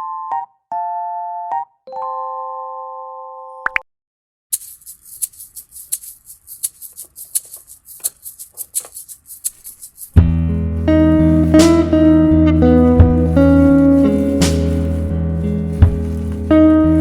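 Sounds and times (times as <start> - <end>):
held keyboard chord: 10.2 - 17.0
music with guitar: 10.2 - 17.0
packaging crinkling and rustling: 13.2 - 17.0.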